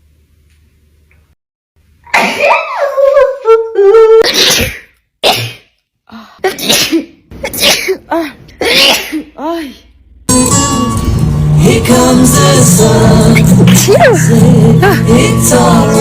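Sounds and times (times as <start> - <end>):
woman sneezing: 4.2 - 5.7, 6.4 - 9.8.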